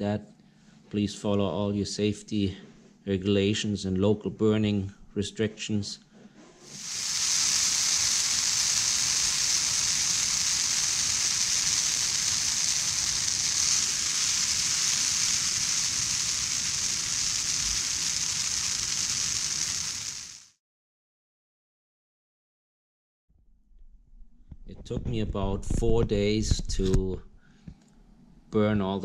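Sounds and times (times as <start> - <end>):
brush fire hissing: 6.7 - 20.6.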